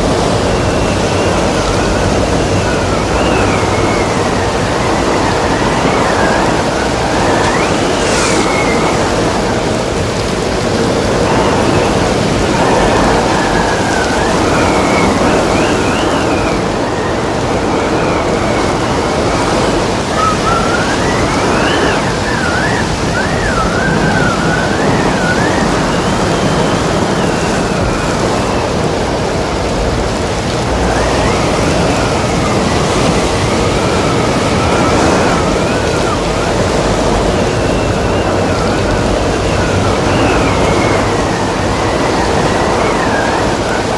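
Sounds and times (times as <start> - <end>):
surf rushing: 0.0 - 43.9
wind whistling: 0.0 - 43.9
brief high hiss: 7.4 - 9.4.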